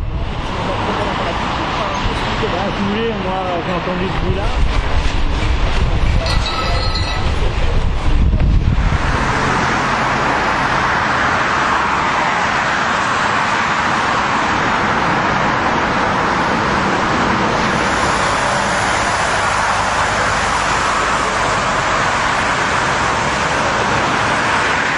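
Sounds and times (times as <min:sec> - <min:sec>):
wind buffeting microphone: 0:03.7 - 0:11.0.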